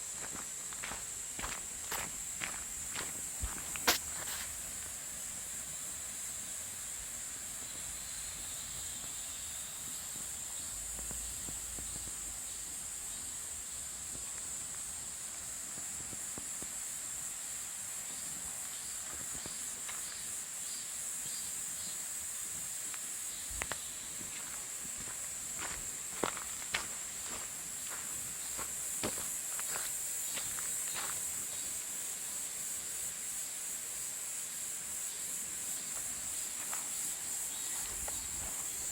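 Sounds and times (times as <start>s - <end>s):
insects droning: 0.0s - 38.9s
footsteps: 0.1s - 5.0s, 22.9s - 31.3s, 35.9s - 38.9s.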